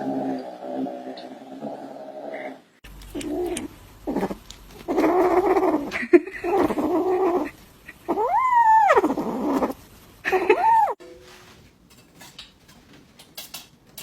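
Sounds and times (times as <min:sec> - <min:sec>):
pet animal crying: 0:03.1 - 0:11.0.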